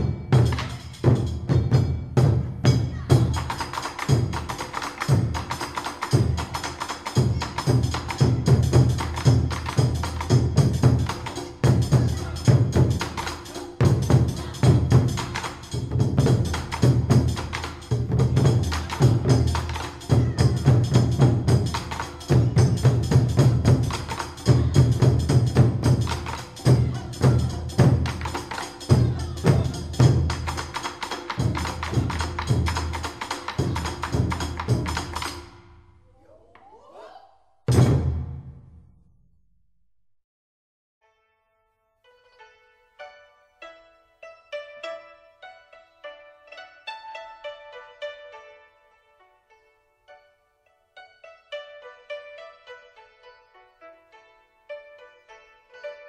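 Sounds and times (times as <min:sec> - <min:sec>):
music with clicky percussive beat: 0:00.0 - 0:35.6.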